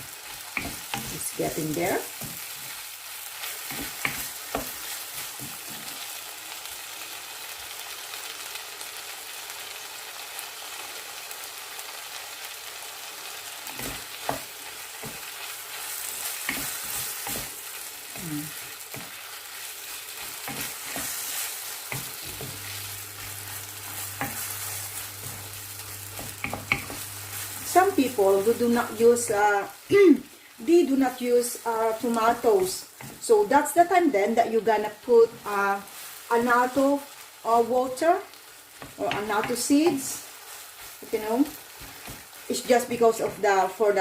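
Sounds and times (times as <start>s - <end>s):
meat sizzling in a frying pan: 0.0s - 44.0s
spatula scraping a pan: 0.2s - 6.0s, 13.6s - 29.4s.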